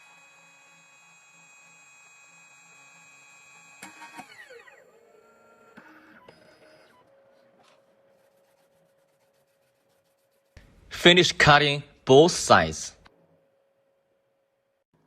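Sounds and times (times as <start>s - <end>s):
cutter spindle whine spinning down: 0.0s - 5.8s.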